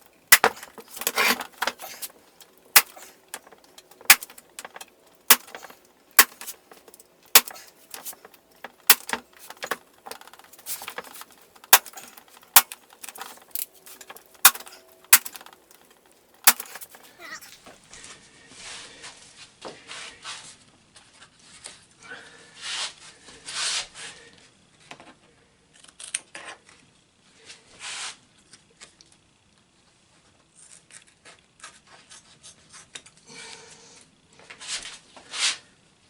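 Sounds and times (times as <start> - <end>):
rustling: 0.0 - 17.6.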